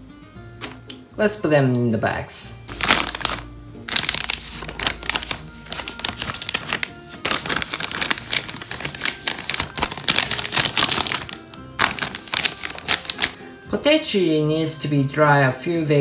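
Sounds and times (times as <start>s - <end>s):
light background music: 0.0s - 16.0s
bags crinkling and rustling: 0.6s - 1.0s, 2.7s - 13.4s.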